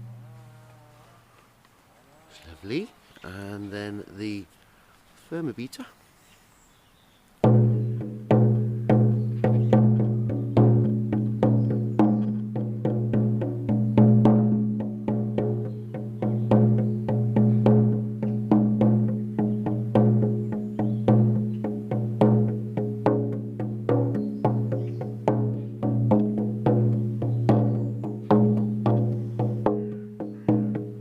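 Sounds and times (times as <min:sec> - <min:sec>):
frame drum struck with beater: 0:07.4 - 0:31.0.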